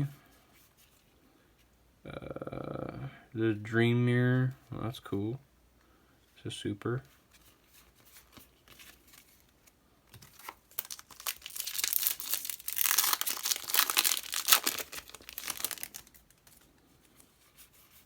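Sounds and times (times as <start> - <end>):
foil wrapper crinkling and tearing: 10.1 - 16.7.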